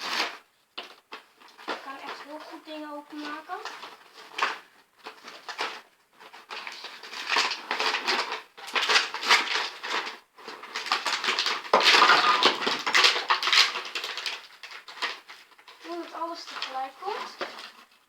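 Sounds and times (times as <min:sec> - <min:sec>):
plastic packaging crinkling and tearing: 0:00.0 - 0:18.0.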